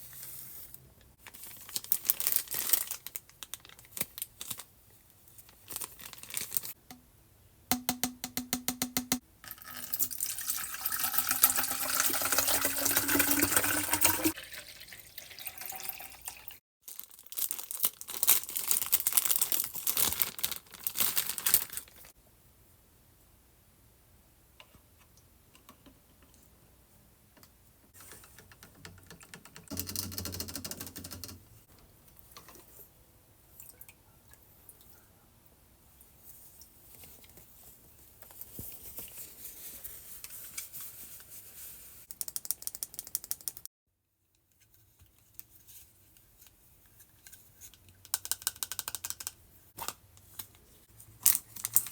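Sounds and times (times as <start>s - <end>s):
water filling plastic tube: 9.4s - 16.6s.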